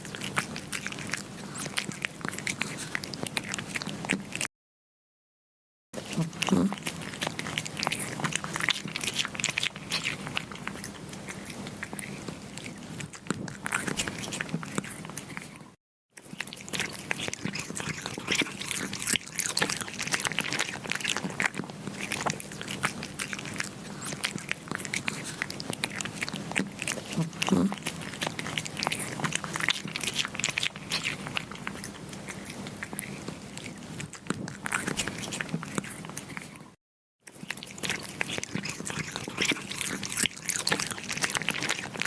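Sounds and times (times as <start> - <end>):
kittens chewing wet smacks: 0.0 - 4.5, 6.0 - 36.7, 37.3 - 42.0.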